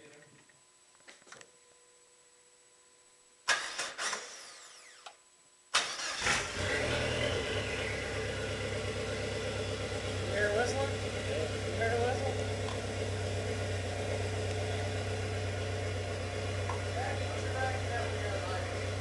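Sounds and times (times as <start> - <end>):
car engine cranking: 5.8 - 19.0
car engine idling: 6.2 - 19.0.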